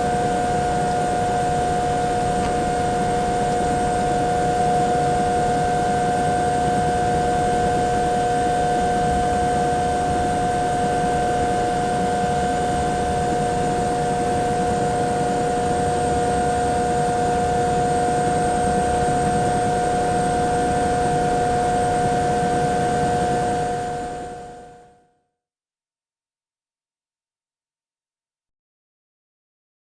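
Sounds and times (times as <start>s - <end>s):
helicopter engines idling: 0.2s - 5.9s.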